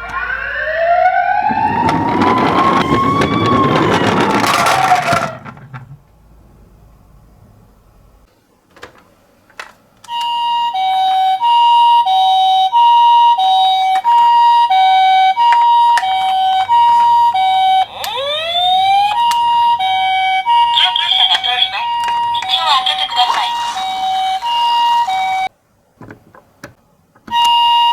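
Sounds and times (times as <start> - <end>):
toy two-tone siren: 0.0 - 5.3, 10.1 - 25.5
rising siren sweep: 0.0 - 5.4, 13.1 - 25.5.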